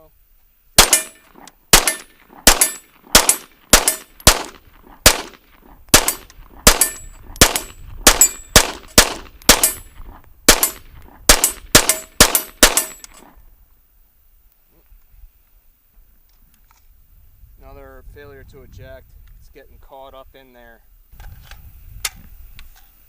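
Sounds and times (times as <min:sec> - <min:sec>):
gunshots: 0:00.8 - 0:09.9, 0:10.5 - 0:13.1.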